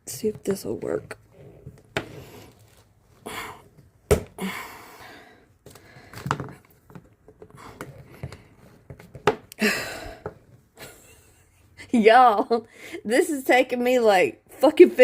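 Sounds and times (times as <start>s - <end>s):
rustling and scraping of pieces: 1.3s - 3.2s.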